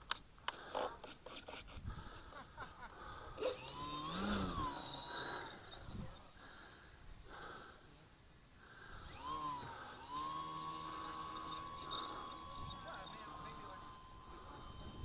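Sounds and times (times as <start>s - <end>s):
electric model airplane motor whining: 3.0s - 8.0s, 8.6s - 15.0s.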